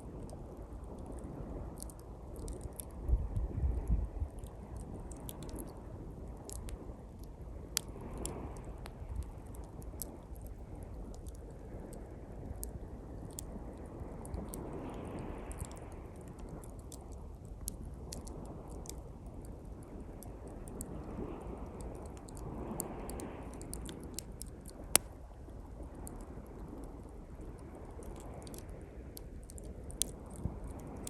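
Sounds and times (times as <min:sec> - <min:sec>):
campfire crackling: 0:00.1 - 0:03.0, 0:04.3 - 0:31.0
waves washing onto shore: 0:04.3 - 0:31.0
fire popping: 0:22.0 - 0:26.9.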